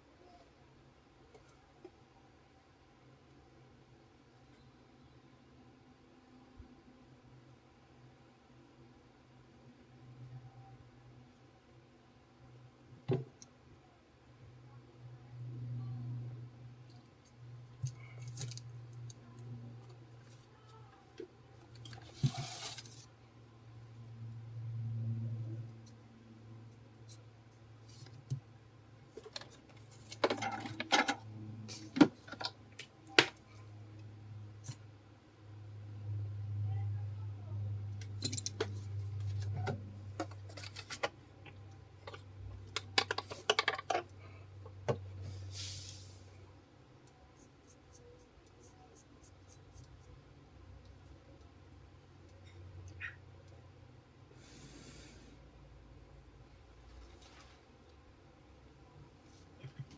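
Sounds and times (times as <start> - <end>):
soft scrape: 22.0 - 23.1, 45.2 - 46.4.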